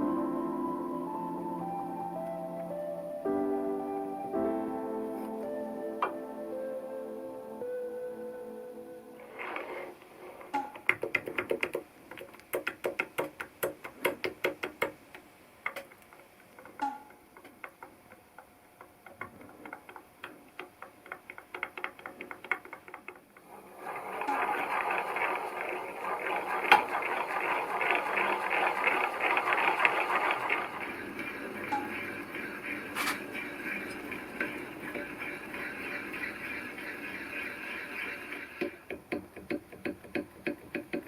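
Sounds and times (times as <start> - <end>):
engine parts clicking and ratcheting: 15.6 - 41.0
rattling whirr: 22.1 - 39.0.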